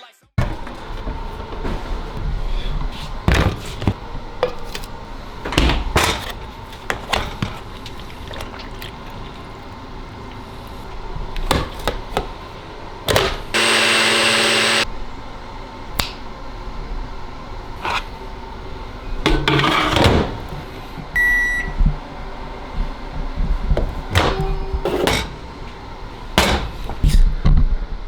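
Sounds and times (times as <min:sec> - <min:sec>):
dishes clattering: 0:00.4 - 0:13.6, 0:19.2 - 0:20.9, 0:23.7 - 0:27.1
loud buzzing tone: 0:13.5 - 0:14.9.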